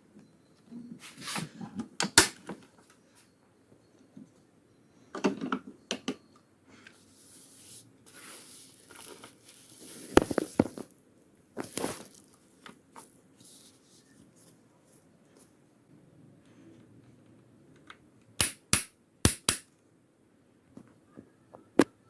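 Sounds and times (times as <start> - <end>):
fabric rustling: 7.1 - 11.0, 11.6 - 15.6.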